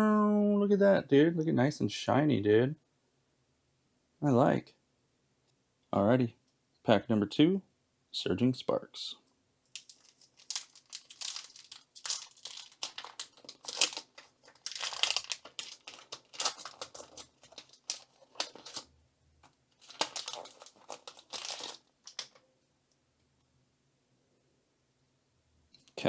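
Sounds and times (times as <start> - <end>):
foil wrapper crinkling and tearing: 9.7 - 22.4.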